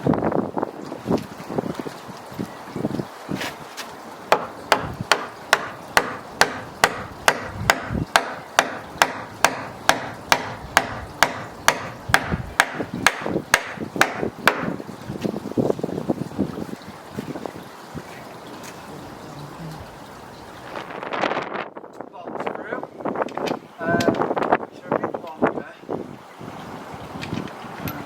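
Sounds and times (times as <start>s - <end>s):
hammer blows ringing: 4.3s - 14.7s.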